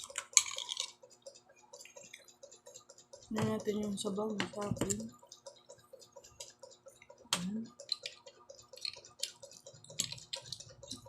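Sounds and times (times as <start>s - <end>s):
soft steady ticking: 0.0s - 11.0s
chewing and mouth smacks: 1.8s - 2.6s, 7.9s - 11.0s.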